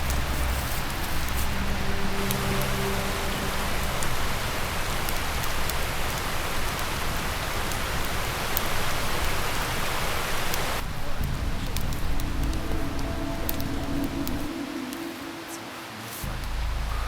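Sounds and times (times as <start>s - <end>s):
faint clicks: 0.0s - 15.2s
river rushing over rocks: 0.0s - 17.0s.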